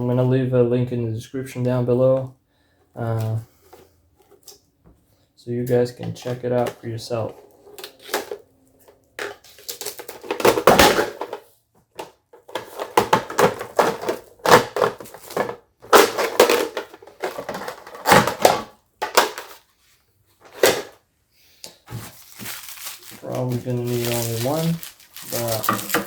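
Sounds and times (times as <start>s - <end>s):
plastic crinkling and rustling: 6.0s - 11.4s, 21.8s - 26.0s.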